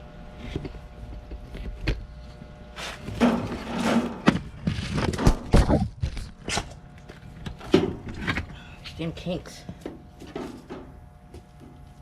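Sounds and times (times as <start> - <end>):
plastic hose knocking and scraping: 3.0 - 6.3.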